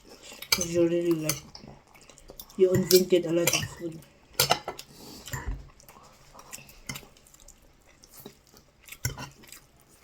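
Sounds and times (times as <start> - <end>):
cutlery clinking on plates: 4.4 - 5.6.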